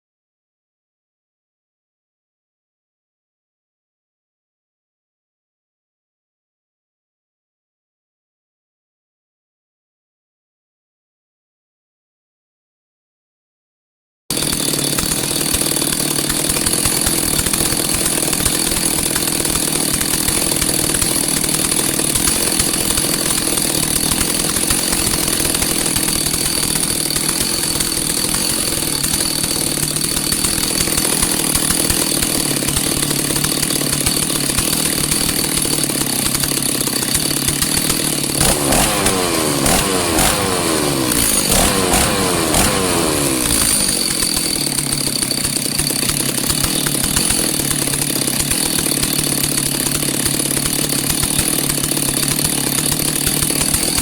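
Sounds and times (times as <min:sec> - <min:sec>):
chainsaw running: 0:14.3 - 0:54.0.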